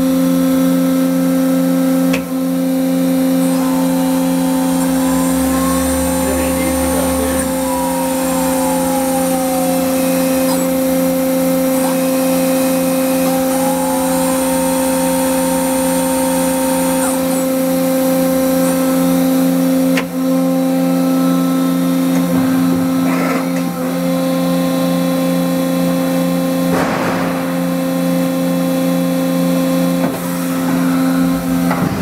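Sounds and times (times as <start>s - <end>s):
machine hum with whine: 0.0s - 32.0s
gliding motor tones: 2.2s - 20.0s.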